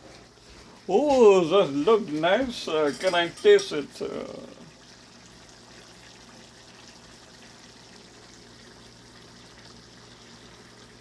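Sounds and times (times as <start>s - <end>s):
food sizzling in a pan: 0.0s - 11.0s.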